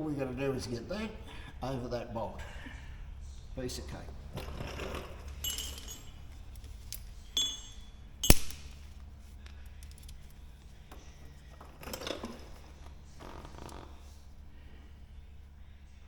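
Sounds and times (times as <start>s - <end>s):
small metal parts clinking: 4.3s - 12.6s.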